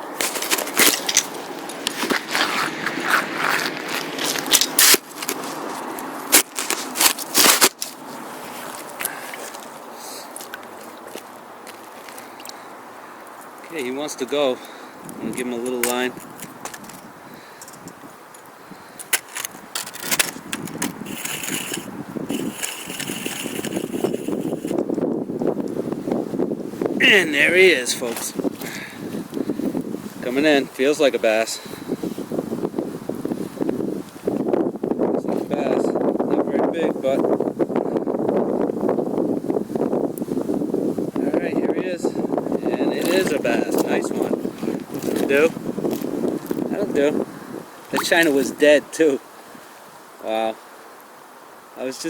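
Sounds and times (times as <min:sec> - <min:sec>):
fishing line rustling by hand: 0:00.0 - 0:13.7, 0:14.6 - 0:25.0, 0:42.9 - 0:48.7
camera handling noise: 0:15.8 - 0:18.0, 0:19.0 - 0:24.8
fishing line clicks and scrapes: 0:15.8 - 0:24.8.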